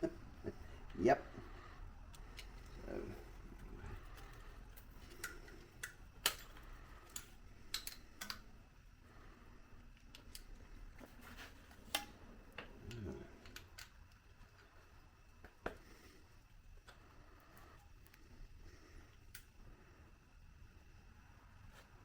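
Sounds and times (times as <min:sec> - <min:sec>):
hand tools and metal hardware clinking: 0:03.4 - 0:08.4.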